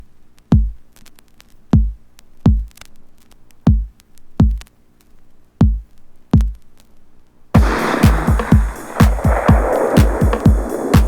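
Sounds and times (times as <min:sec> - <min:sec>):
electronic kick drum thumping: 0:00.5 - 0:00.8, 0:01.7 - 0:02.8, 0:03.7 - 0:04.7, 0:05.6 - 0:06.6, 0:07.6 - 0:11.0
light clicky percussion: 0:07.6 - 0:11.0.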